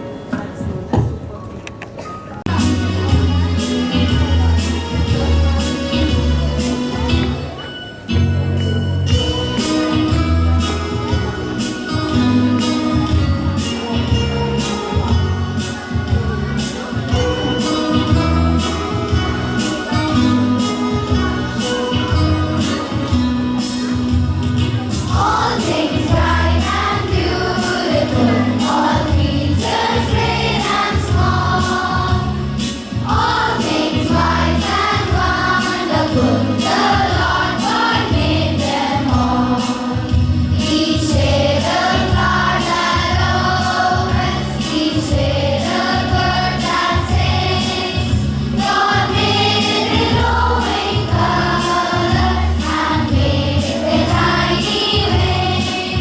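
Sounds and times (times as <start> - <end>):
music with steady beat: 2.5 - 56.0
children singing: 25.1 - 56.0.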